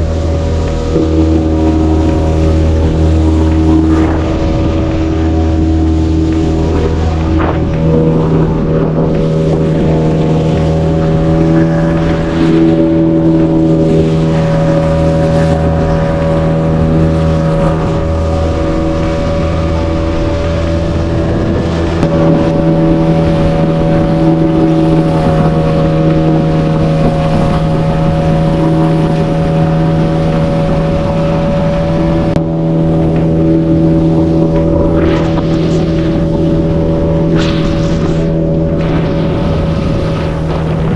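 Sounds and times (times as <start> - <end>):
boat engine running: 0.0 - 40.9
water noise: 0.0 - 40.9
wind: 0.0 - 40.9.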